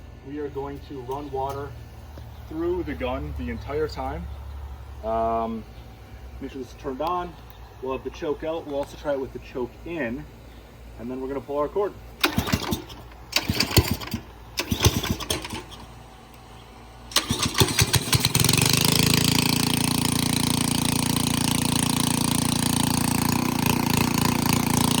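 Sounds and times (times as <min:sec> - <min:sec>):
recoil cord pulls: 0:12.2 - 0:15.9
small gasoline engine running: 0:12.2 - 0:16.0, 0:17.1 - 0:25.0.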